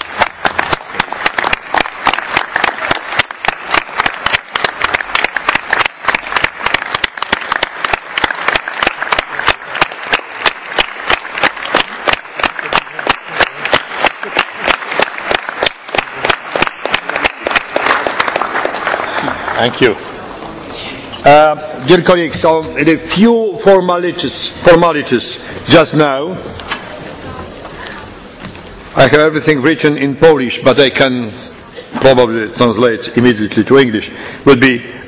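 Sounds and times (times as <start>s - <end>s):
audience applauding: 0.0s - 20.2s.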